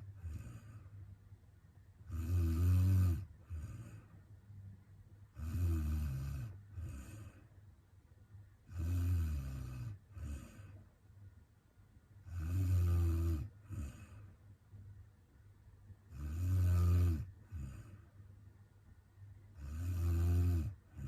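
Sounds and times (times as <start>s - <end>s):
woman snoring: 0.2s - 0.9s, 2.1s - 4.1s, 5.4s - 7.4s, 8.7s - 10.7s, 12.3s - 14.2s, 16.1s - 18.0s, 19.6s - 21.0s.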